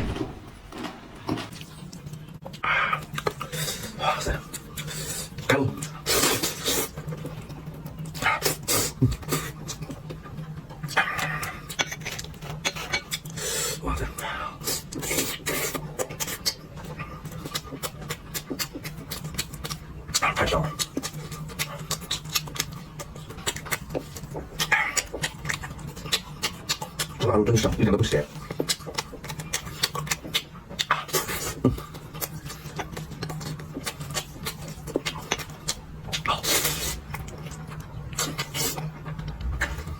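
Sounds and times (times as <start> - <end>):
steady low hum: 0.0 - 39.9
smacking and chewing clicks: 14.8 - 39.9
person slurping: 36.1 - 37.1.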